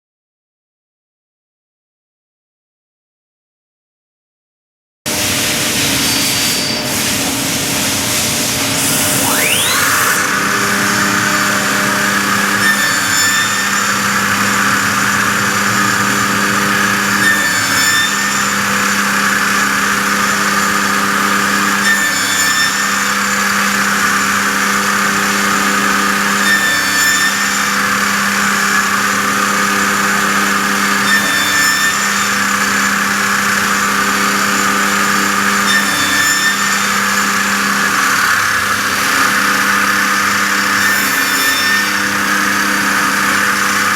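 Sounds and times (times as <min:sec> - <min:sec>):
saw blade spinning hiss: 0:05.2 - 0:17.2
machine hum changing pitch: 0:08.5 - 0:17.8
brief high chirp: 0:08.8 - 0:10.4.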